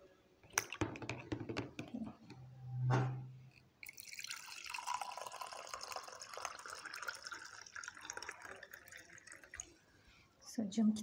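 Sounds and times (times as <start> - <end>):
water pouring into a container: 3.8 - 9.8.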